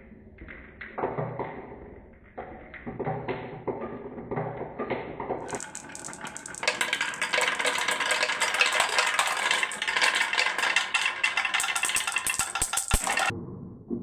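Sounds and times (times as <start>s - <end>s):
marbles clattering down a marble run: 5.4s - 13.3s.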